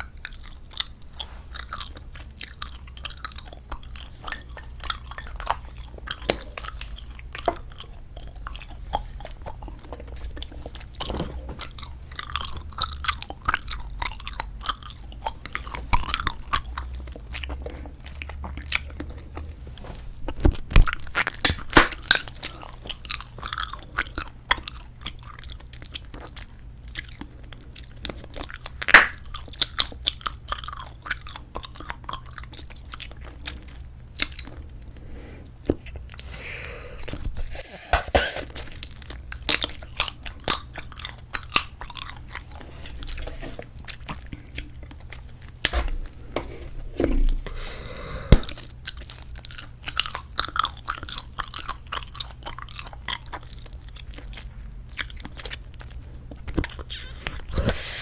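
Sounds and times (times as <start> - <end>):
mouth chewing gum: 0.0 - 19.6
gum snap: 28.9 - 29.3.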